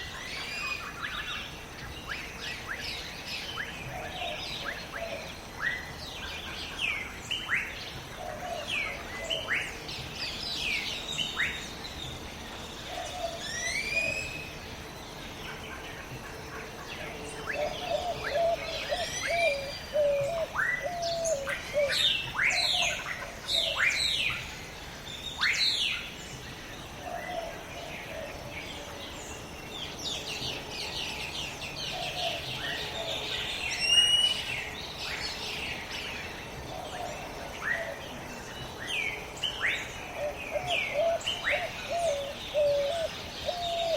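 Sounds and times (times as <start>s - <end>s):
whistled bird chirps: 13.5s - 14.5s.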